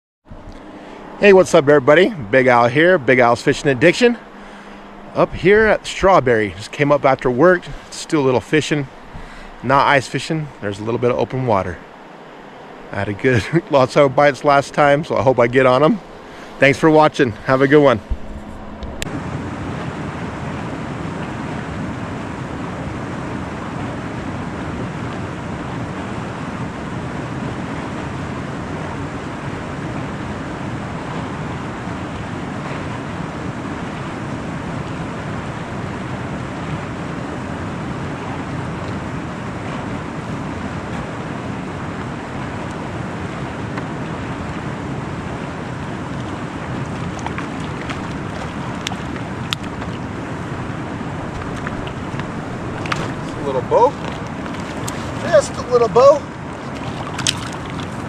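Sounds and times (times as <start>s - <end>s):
wind on microphone: 15.6s - 58.0s.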